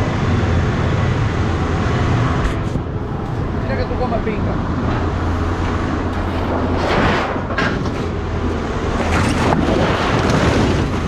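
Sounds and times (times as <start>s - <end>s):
engine running with low hum: 0.0s - 11.0s
short rough noises: 5.9s - 10.9s.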